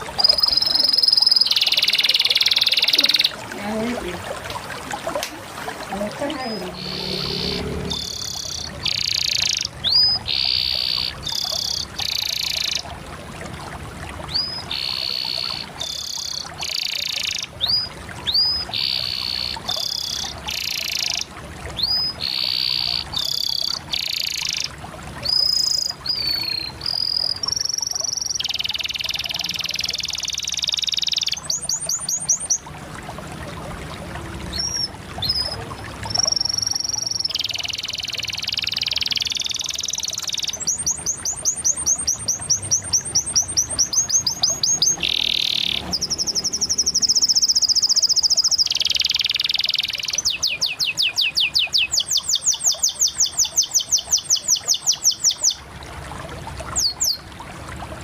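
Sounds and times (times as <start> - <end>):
canary singing trills: 0.0 - 4.2, 5.9 - 12.9, 14.3 - 32.6, 34.5 - 55.6.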